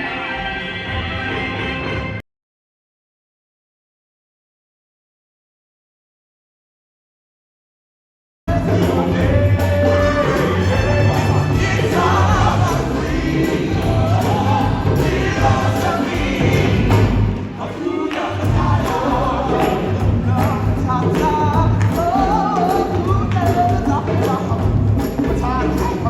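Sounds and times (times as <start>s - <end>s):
steady bass beat: 8.5s - 17.4s, 18.4s - 22.4s
choir singing: 8.5s - 24.3s.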